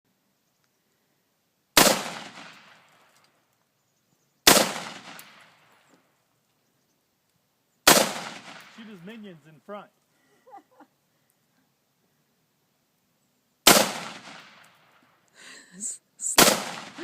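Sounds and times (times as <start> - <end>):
rifle shots: 1.8 - 3.1, 4.4 - 5.7, 7.8 - 9.0, 13.6 - 15.0, 16.4 - 17.0.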